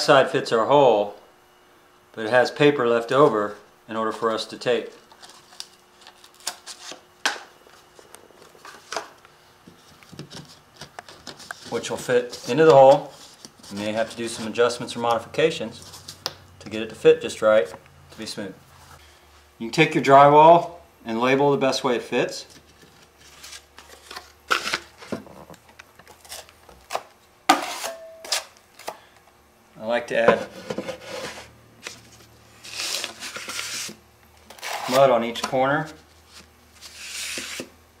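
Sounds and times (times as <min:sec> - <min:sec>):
drywall piece scraping: 0:32.6 - 0:35.1, 0:36.8 - 0:37.7.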